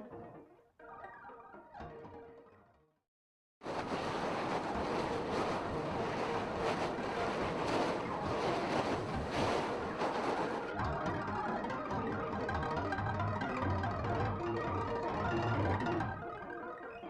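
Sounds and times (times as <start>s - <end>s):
steady rushing noise: 3.6s - 10.8s.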